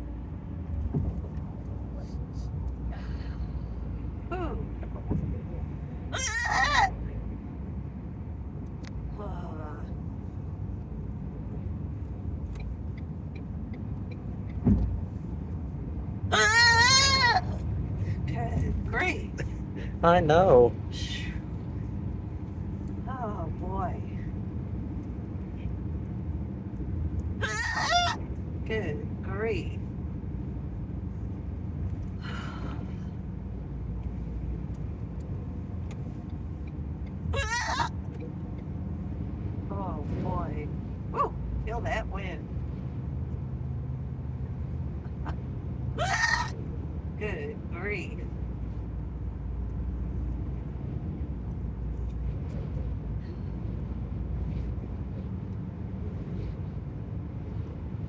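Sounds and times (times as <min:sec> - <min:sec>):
car cabin road rumble: 0:00.0 - 0:58.0.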